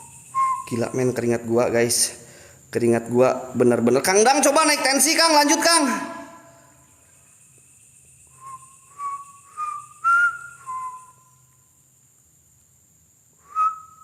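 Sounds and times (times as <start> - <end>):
person whistling: 0.0 - 1.0, 8.4 - 11.3, 13.4 - 14.0
faint high-pitched whine: 0.0 - 14.0.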